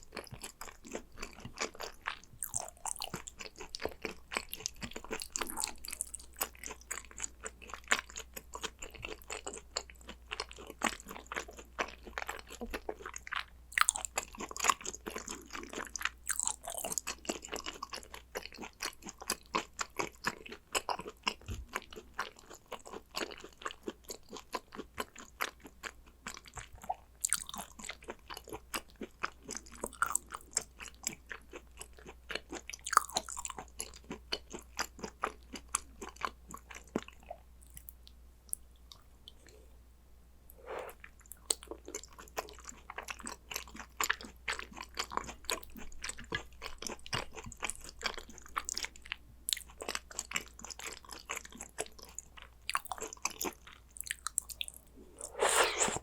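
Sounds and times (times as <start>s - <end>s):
chewing and crunching food: 0.0s - 39.8s, 40.6s - 56.0s
wet mouth sounds: 40.5s - 41.7s, 54.0s - 56.0s.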